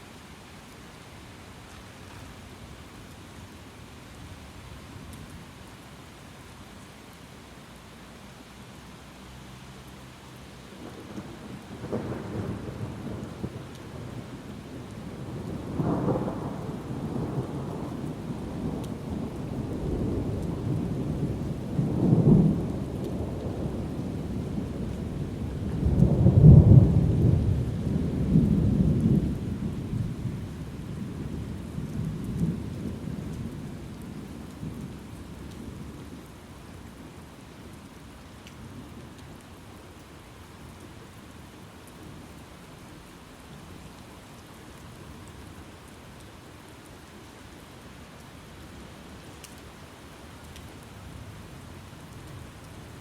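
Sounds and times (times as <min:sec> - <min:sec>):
steady rain: 0:00.0 - 0:53.0
rolling thunder: 0:15.0 - 0:33.5.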